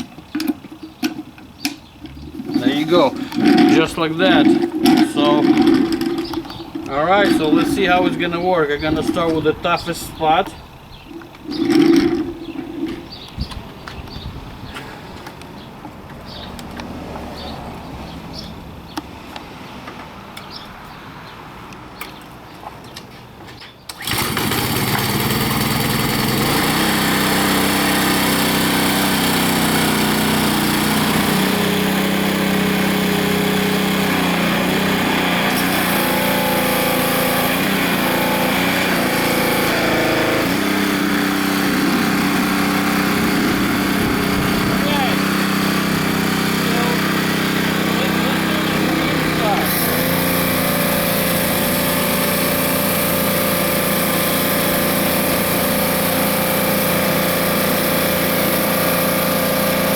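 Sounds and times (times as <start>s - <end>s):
pressure washer spraying: 2.2s - 10.5s, 24.0s - 59.9s.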